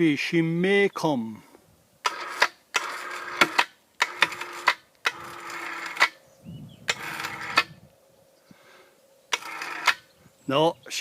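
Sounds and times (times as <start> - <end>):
ratchet winch clicking: 2.1 - 6.2, 6.9 - 7.7, 9.3 - 10.0.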